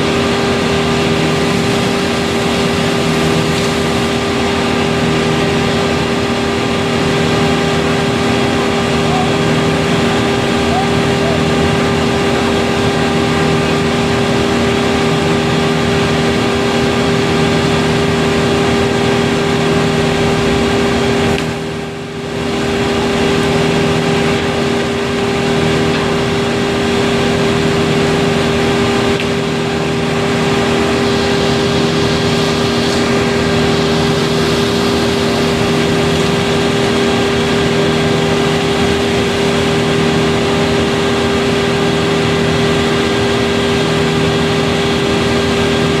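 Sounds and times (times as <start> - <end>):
large engine running: 0.0 - 46.0.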